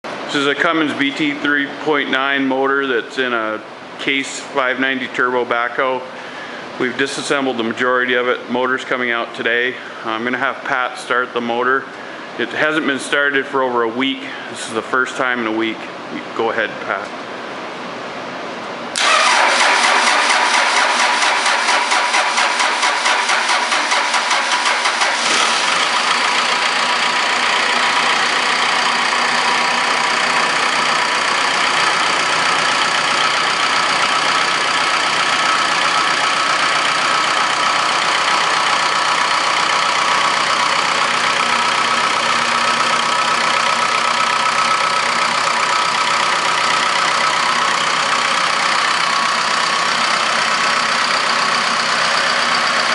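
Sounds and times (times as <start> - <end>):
diesel engine idling: 0.1 - 11.2, 16.9 - 52.9
starter motor cranking: 19.0 - 49.9.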